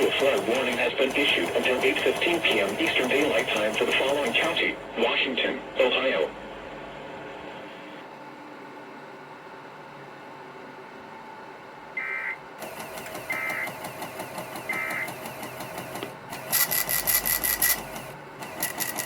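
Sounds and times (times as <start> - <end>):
printer rattling: 0.0 - 4.8, 12.6 - 19.0.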